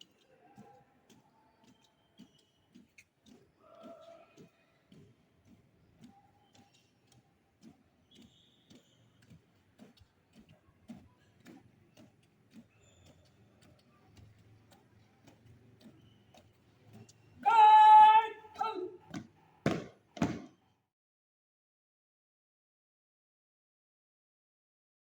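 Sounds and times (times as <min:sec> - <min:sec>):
marching footsteps: 0:00.0 - 0:20.7
shouted drill command: 0:17.4 - 0:19.2.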